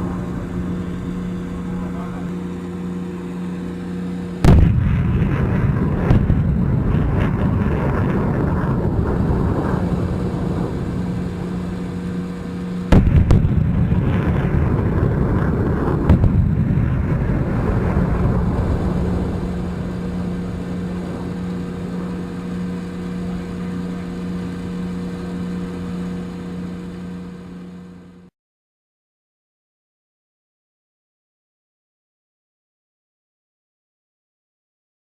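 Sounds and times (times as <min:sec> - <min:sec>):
truck engine idling: 0:00.0 - 0:07.0
rocket motor noise with cracks: 0:00.0 - 0:27.6
rocket launch blast: 0:04.4 - 0:24.0.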